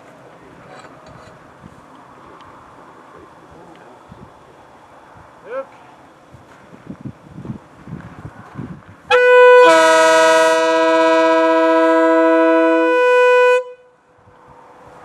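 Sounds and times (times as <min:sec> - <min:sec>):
locomotive air horn chord: 0:09.1 - 0:14.0.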